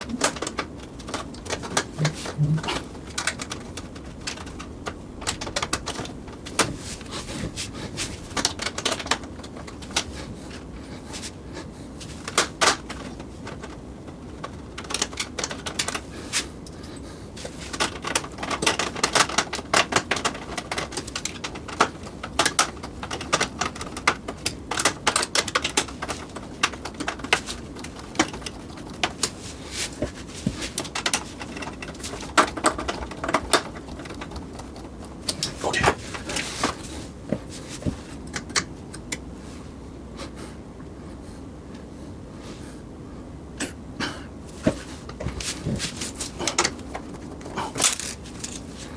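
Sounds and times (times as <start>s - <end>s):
hands handling computer case parts: 0.0s - 39.7s, 44.4s - 48.9s
steady low hum: 0.0s - 48.9s.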